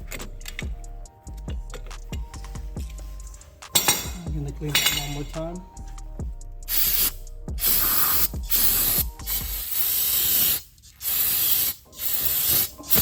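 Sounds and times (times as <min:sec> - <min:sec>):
aerosol spray hissing: 0:06.7 - 0:13.0.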